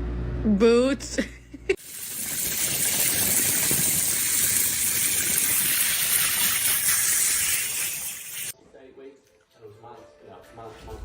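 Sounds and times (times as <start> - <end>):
running water rushing: 1.8 - 8.5.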